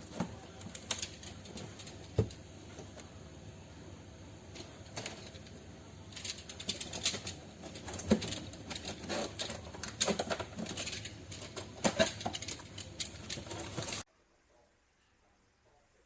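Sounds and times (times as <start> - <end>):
objects being handled: 4.5 - 14.0.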